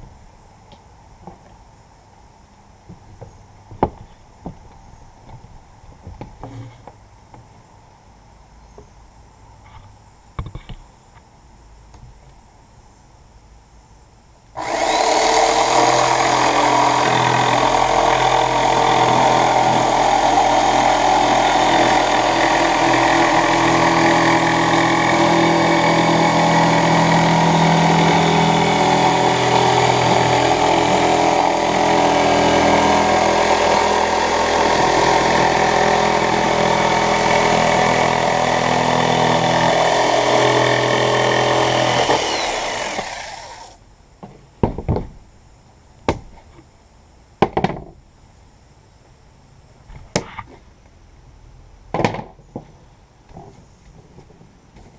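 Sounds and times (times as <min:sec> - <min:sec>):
power saw cutting wall board: 0:14.6 - 0:43.8.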